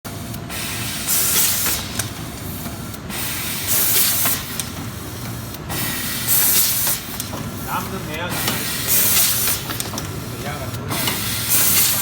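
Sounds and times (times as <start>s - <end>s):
packaging machine running: 5.9s - 12.0s.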